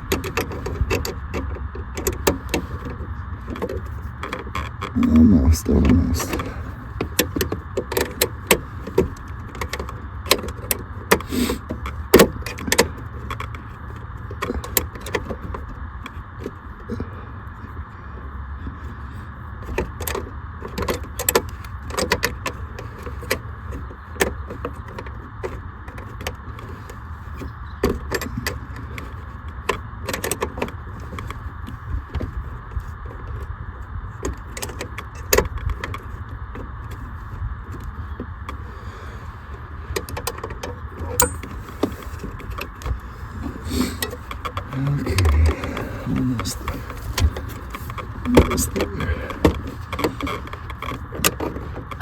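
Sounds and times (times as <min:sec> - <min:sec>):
steady low hum: 0:00.0 - 0:22.0, 0:25.4 - 0:52.0
metallic tool clicks and rattles: 0:41.2 - 0:41.5.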